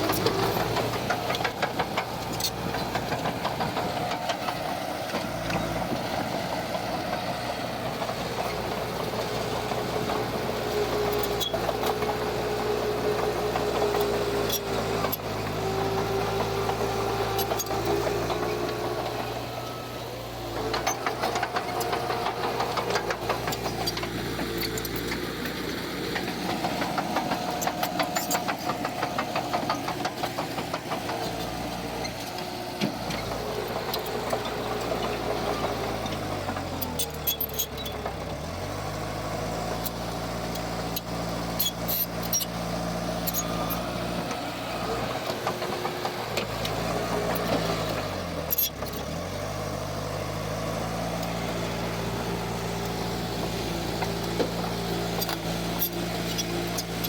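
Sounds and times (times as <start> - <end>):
heavy diesel engine under load: 0.0 - 57.0.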